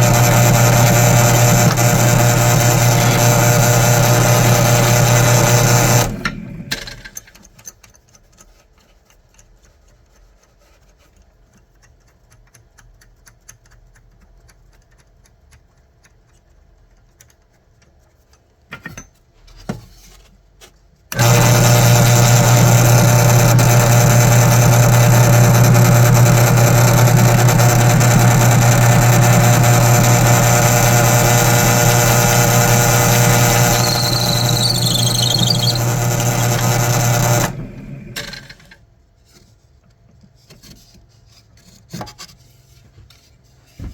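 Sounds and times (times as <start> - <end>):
power tool motor running: 0.0 - 7.2, 21.1 - 38.8.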